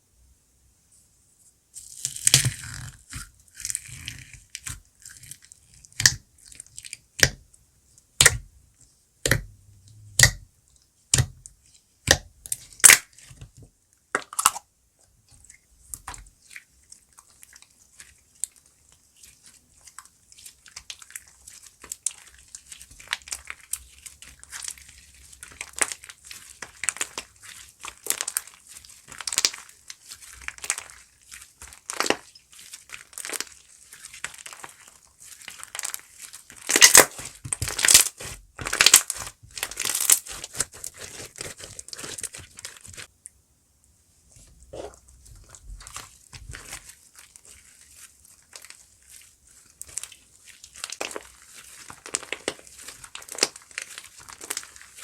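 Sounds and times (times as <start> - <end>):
slime crackling: 15.9 - 43.1, 44.7 - 55.0.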